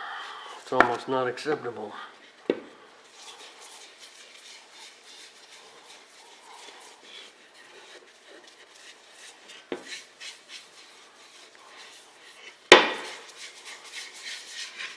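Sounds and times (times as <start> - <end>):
rubbing and handling noises: 0.0 - 14.9
sharp knocks: 12.7 - 13.2.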